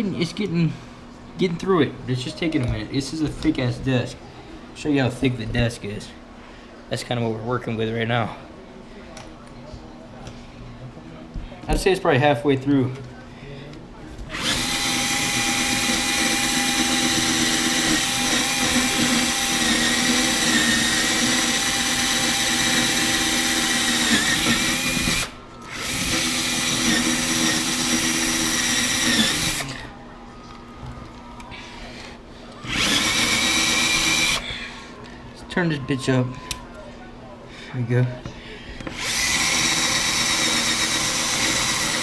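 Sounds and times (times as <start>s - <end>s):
drill hole saw cutting wood: 14.3s - 29.9s, 32.6s - 34.4s, 38.9s - 42.0s.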